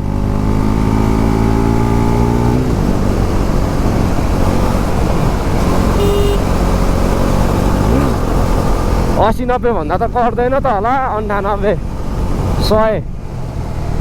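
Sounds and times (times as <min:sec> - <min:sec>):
motorcycle engine accelerating: 0:00.0 - 0:10.4
short beep: 0:06.0 - 0:06.4.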